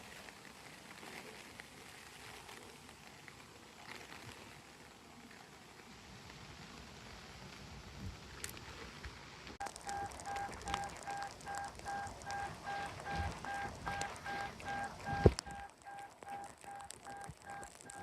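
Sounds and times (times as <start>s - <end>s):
electronic beeping: 9.6s - 18.0s.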